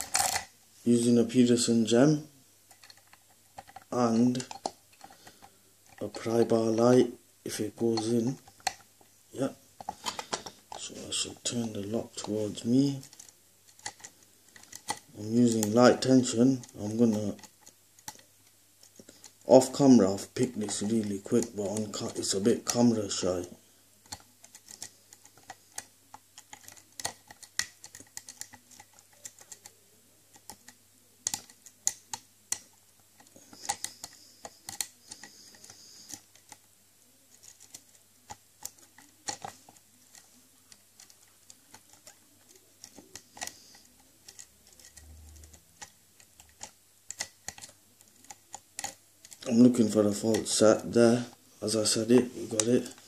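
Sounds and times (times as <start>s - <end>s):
lock pick clicking and scraping: 0.0s - 0.5s, 11.4s - 19.4s, 24.1s - 36.6s, 37.3s - 40.3s, 41.0s - 50.9s.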